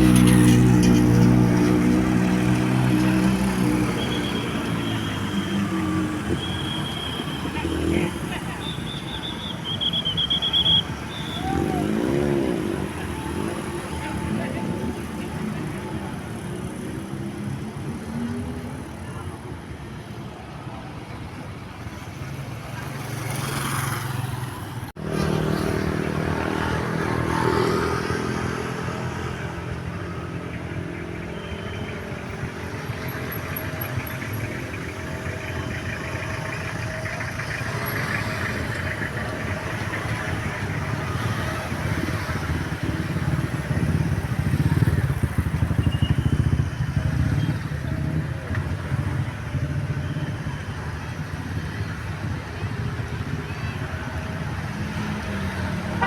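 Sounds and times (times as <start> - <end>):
road traffic passing: 0.0 - 56.0
vehicle engine starting: 32.7 - 49.2.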